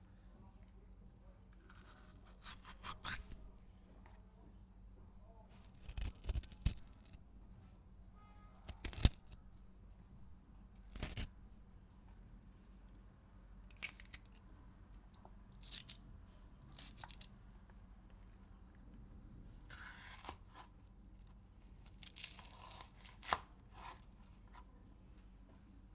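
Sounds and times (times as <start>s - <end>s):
knife slicing pepper: 1.6s - 3.5s, 5.6s - 7.2s, 8.6s - 9.4s, 10.8s - 11.3s, 19.7s - 20.7s, 22.1s - 24.0s.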